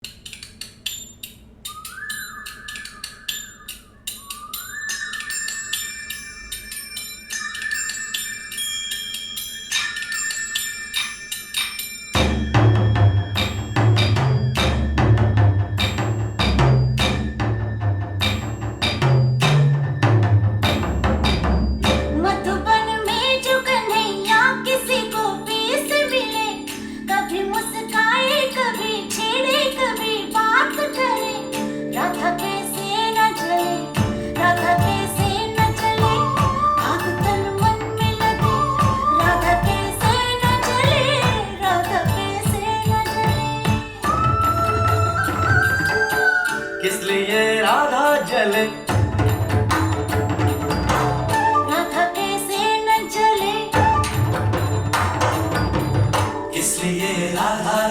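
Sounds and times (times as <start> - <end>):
wavering high tone: 0.9 - 57.9
mallet percussion notes: 2.2 - 57.9
song over loudspeakers: 22.0 - 49.0, 56.4 - 57.9.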